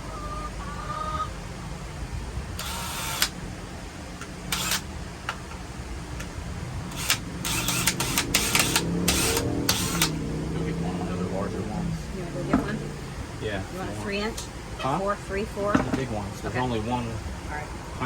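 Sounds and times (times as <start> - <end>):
cordless drill driving a screw: 2.6 - 3.4, 4.5 - 4.9, 6.9 - 10.2.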